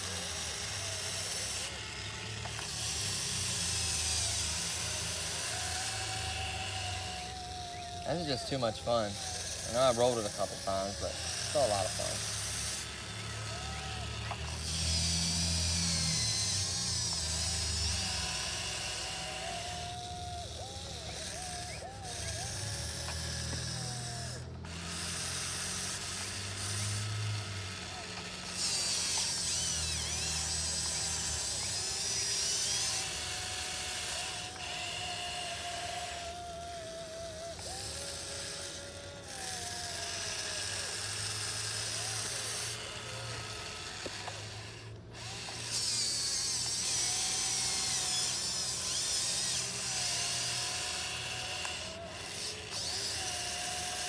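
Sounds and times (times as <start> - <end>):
electric motors whining: 0.0 - 54.0.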